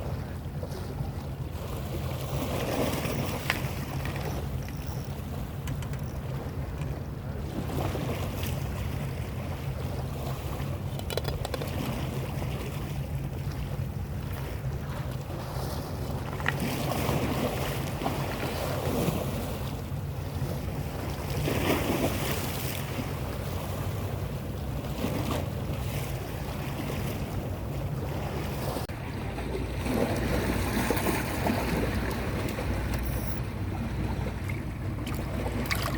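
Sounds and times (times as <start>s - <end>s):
boat engine running: 0.0s - 35.9s
water splashing: 29.1s - 35.9s.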